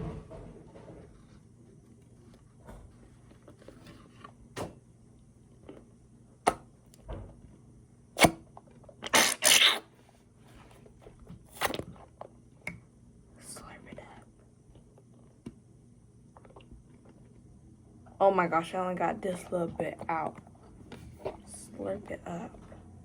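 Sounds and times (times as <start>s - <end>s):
slime squelching: 9.0s - 9.8s.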